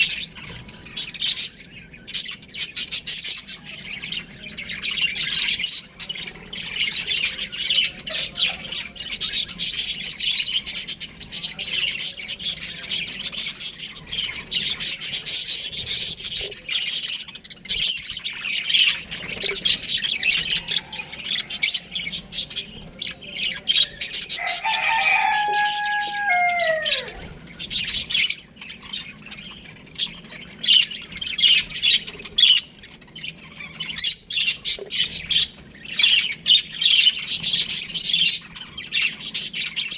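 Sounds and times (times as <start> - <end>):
budgerigars chirping: 0.0 - 39.9
rooster crowing: 20.3 - 21.9, 24.0 - 27.5.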